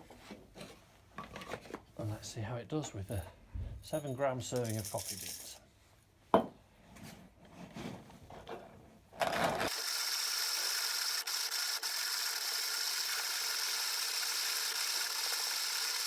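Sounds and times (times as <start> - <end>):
coffee grinder grinding: 9.2 - 16.0.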